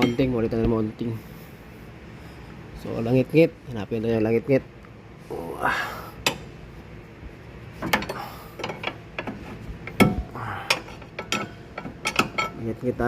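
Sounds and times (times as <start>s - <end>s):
metallic suspension clanks and knocks: 0.0s - 0.5s, 7.8s - 12.7s.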